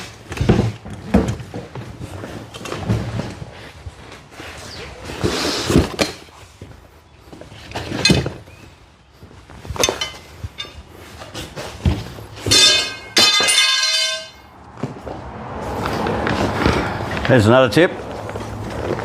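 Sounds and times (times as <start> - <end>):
metallic ringing: 12.4 - 14.6.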